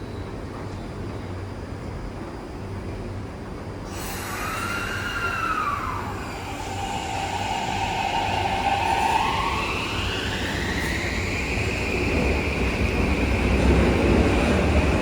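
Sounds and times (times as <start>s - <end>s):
electric train rumbling: 0.0s - 15.0s
high whine: 4.0s - 15.0s.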